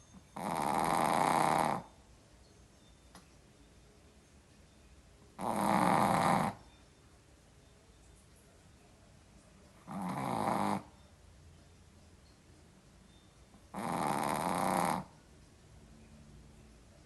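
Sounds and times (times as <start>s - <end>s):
dog snoring: 0.3s - 2.0s, 5.4s - 6.7s, 9.8s - 11.0s, 13.6s - 15.2s.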